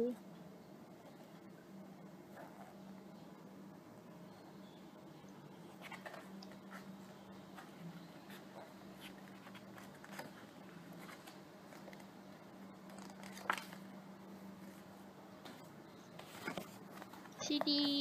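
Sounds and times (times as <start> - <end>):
steady low hum: 0.0 - 18.0
paper booklet rustling: 5.7 - 18.0.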